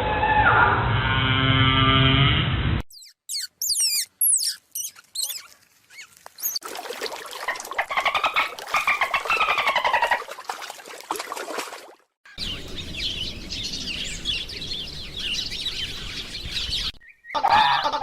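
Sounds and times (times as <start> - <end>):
high-pitched animal squeaks: 2.9 - 6.6.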